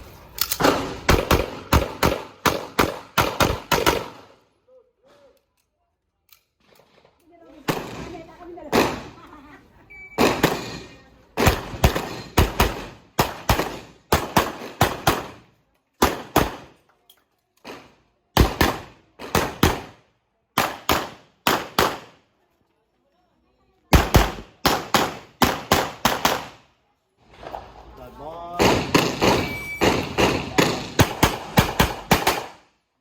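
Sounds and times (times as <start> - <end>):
gunshots with ringing echo: 10.2 - 15.4, 28.6 - 32.6.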